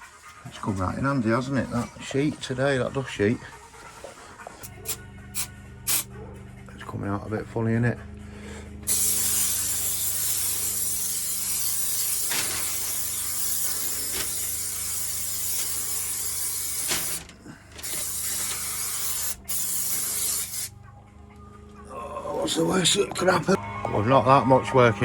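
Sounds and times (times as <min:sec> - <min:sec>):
aerosol spray hissing: 0:04.6 - 0:06.1, 0:08.9 - 0:20.7.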